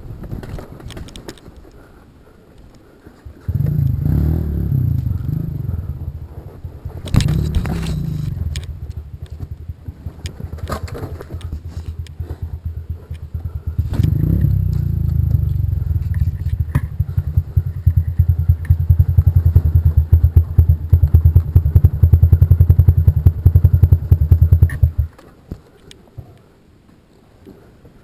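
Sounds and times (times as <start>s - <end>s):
motorcycle engine running: 3.3s - 25.2s.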